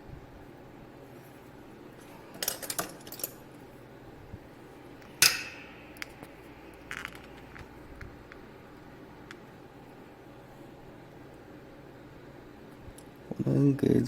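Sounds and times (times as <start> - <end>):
metal objects clicking on a surface: 5.0 - 7.5.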